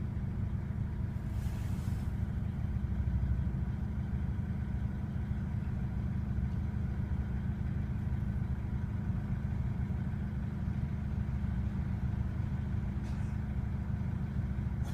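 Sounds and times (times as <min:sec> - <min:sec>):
diesel engine idling rough: 0:00.0 - 0:14.9.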